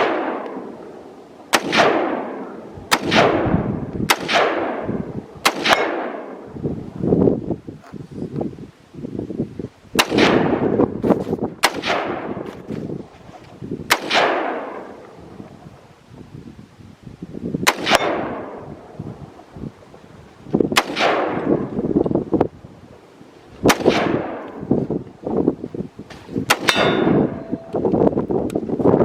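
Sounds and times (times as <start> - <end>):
handgun shots with echo: 1.5 - 6.4, 10.0 - 10.6, 11.6 - 12.4, 13.9 - 14.9, 17.7 - 18.6, 20.8 - 21.6, 23.7 - 24.6, 26.5 - 27.5.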